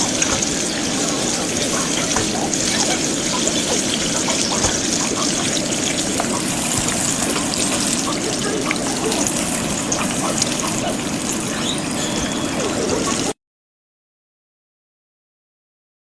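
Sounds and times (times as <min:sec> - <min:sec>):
food deep-frying in hot oil: 0:00.0 - 0:13.4.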